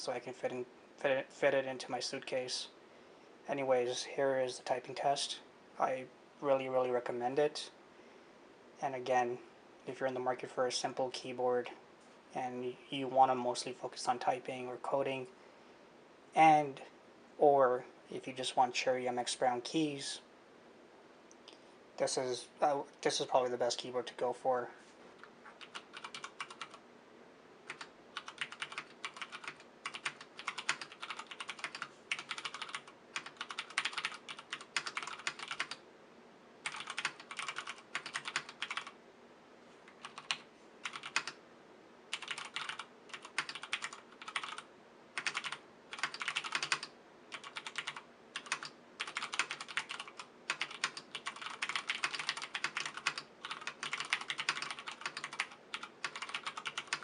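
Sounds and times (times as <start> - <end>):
mechanical keyboard typing: 25.6 - 26.8, 27.7 - 35.8, 36.6 - 39.0, 40.0 - 41.4, 42.1 - 44.6, 45.2 - 57.0.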